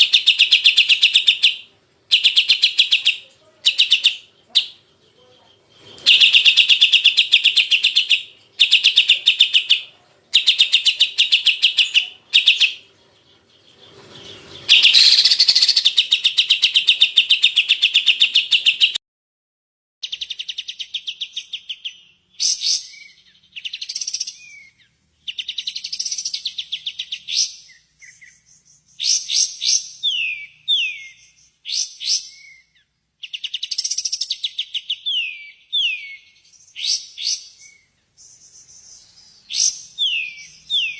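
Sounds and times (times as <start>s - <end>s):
bird chirps and whistles: 10.4s - 12.8s, 14.7s - 19.0s, 20.0s - 40.9s.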